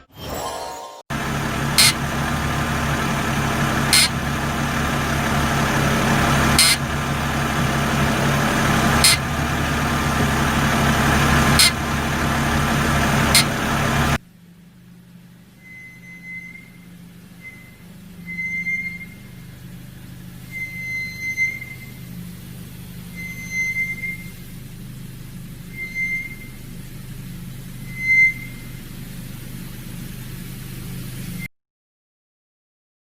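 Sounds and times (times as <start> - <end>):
car engine and road drone: 1.1 - 31.5
short high hiss: 1.6 - 4.3, 6.0 - 10.4, 11.1 - 11.8.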